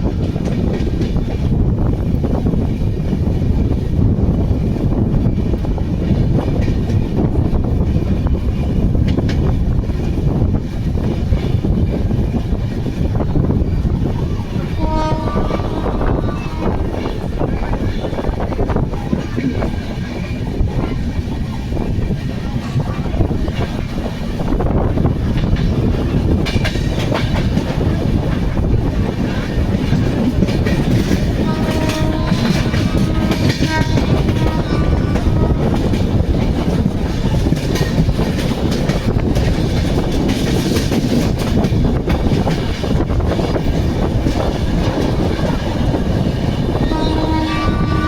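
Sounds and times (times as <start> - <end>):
train wheels rumbling on rails: 0.0 - 48.0
train horn: 14.7 - 17.0, 31.3 - 36.0, 46.8 - 48.0.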